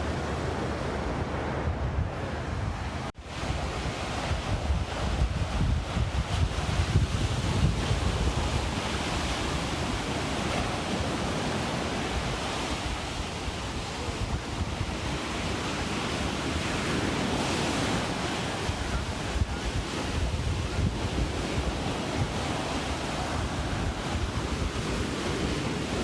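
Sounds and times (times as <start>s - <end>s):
ocean surf breaking: 0.0s - 26.0s
wind buffeting microphone: 0.0s - 26.0s.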